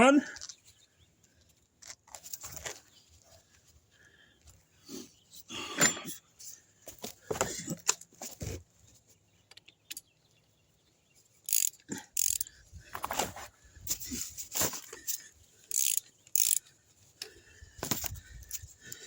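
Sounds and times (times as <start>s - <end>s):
metal tools clinking: 5.6s - 6.2s, 13.9s - 16.7s.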